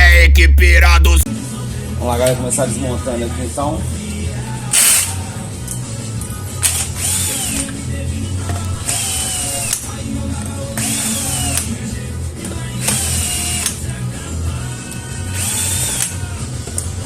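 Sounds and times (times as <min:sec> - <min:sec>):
background music: 0:00.0 - 0:17.0
power screwdriver motor whine: 0:04.7 - 0:05.2, 0:06.6 - 0:07.8, 0:08.8 - 0:09.9, 0:12.8 - 0:13.8, 0:15.4 - 0:16.2.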